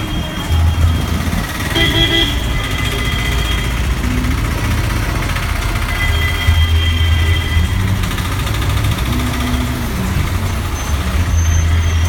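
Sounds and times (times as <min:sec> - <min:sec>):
traffic engines rumbling: 0:00.0 - 0:12.0.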